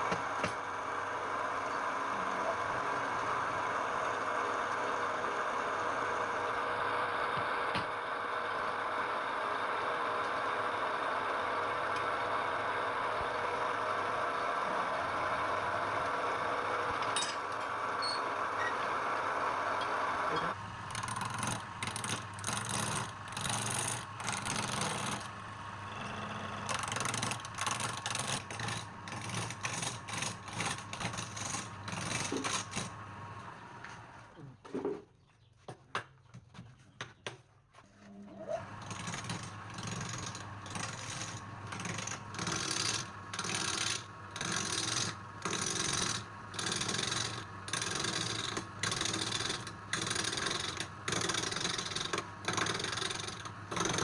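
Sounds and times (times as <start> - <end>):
wood lathe cutting wood: 19.0 - 33.5.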